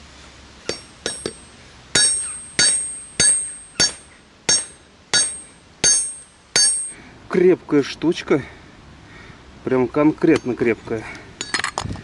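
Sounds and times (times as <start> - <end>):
hammer striking metal: 0.7 - 7.0.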